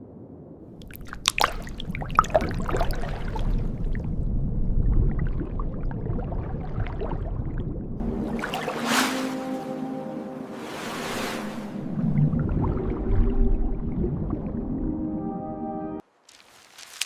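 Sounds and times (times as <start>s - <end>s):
low rumble: 0.0s - 8.6s, 11.0s - 15.2s
sharp splashes and drips: 0.8s - 9.8s
sea water sloshing: 0.8s - 15.0s.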